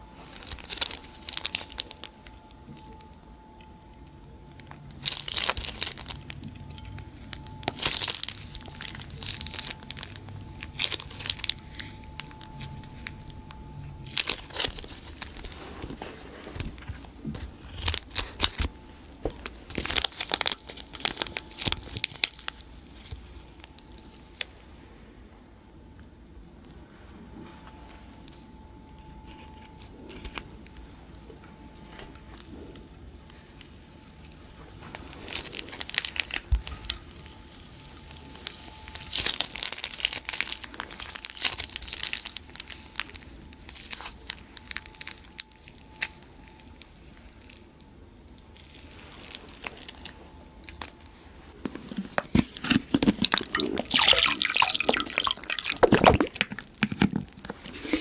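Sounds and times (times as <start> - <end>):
slime squelching and popping: 4.6 - 24.5, 29.0 - 47.6, 51.8 - 58.0.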